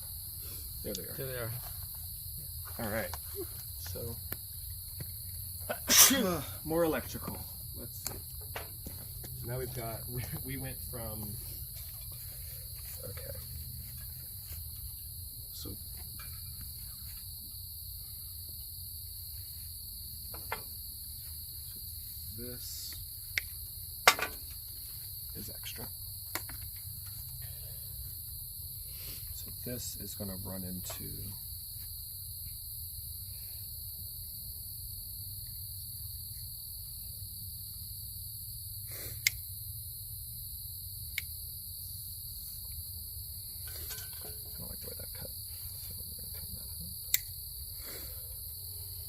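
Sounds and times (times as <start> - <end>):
crickets trilling: 0.0 - 49.0
sharp click: 47.1 - 47.3.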